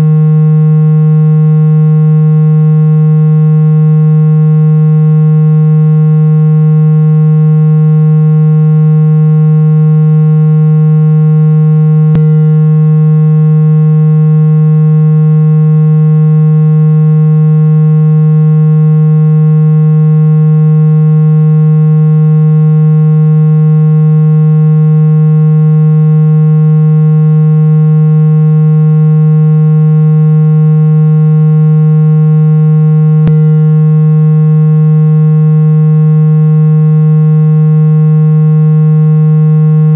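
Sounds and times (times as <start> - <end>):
buzzy synthesized low tone: 0.0 - 39.9.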